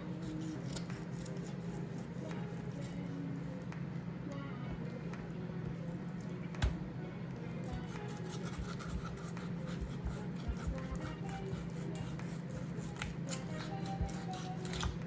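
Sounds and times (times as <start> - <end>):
cutting and scraping chicken: 0.0 - 3.6, 7.6 - 15.0
steady low hum: 0.0 - 15.0.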